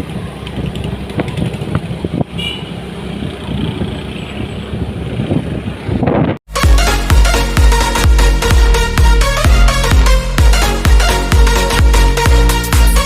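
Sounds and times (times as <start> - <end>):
vehicle engine and road rumble: 0.0 - 13.0.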